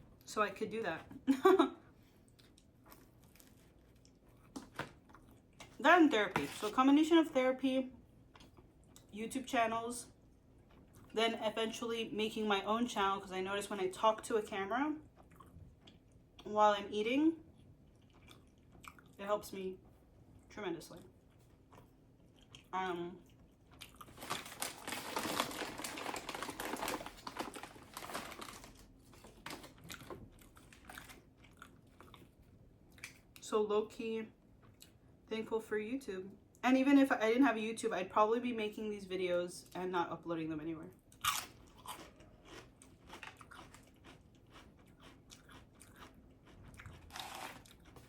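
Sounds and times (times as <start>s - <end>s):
crisp sandwich chewing: 23.3s - 33.4s, 41.1s - 48.0s.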